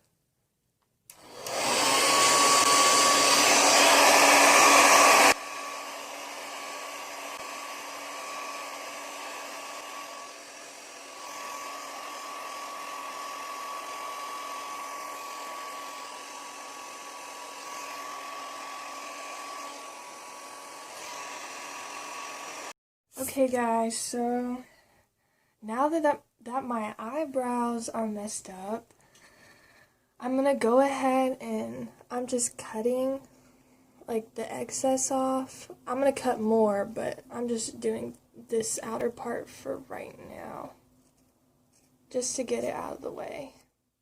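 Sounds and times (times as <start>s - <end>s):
hair dryer blowing with high whine: 1.1s - 22.8s.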